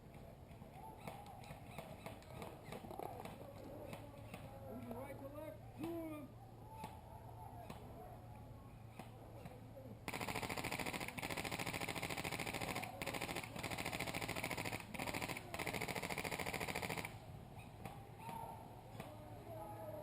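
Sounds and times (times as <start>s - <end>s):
airsoft rifle firing full auto: 10.1s - 17.2s.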